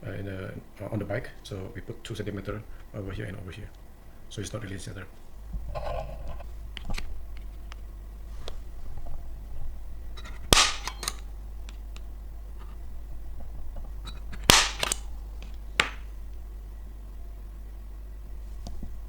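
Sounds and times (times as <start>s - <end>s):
hammer striking metal: 10.5s - 11.2s.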